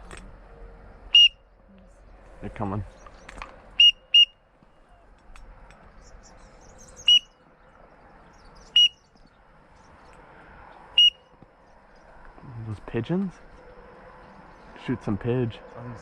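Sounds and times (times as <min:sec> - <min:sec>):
waterfowl whistle peeps: 0:01.1 - 0:01.4, 0:03.8 - 0:04.4, 0:07.0 - 0:07.4, 0:08.7 - 0:09.0, 0:11.0 - 0:11.2.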